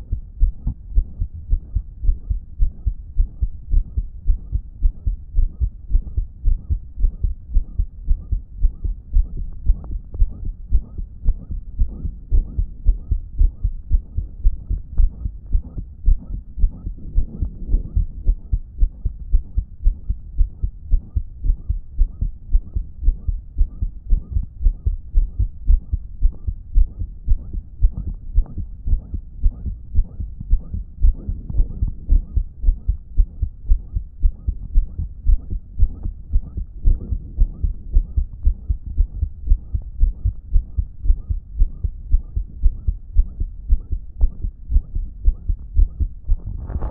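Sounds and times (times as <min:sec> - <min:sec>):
blowing heart murmur: 0:00.0 - 0:46.9
human heartbeat: 0:00.0 - 0:46.9.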